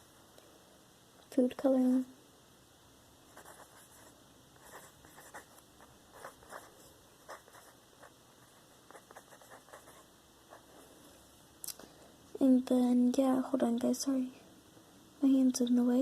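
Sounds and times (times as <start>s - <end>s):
pen scratching on paper: 3.3s - 10.7s.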